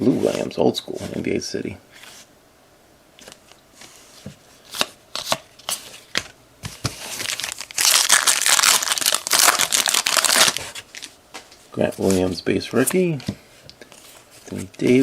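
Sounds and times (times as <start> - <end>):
plastic wrapper crinkling: 7.0 - 11.2.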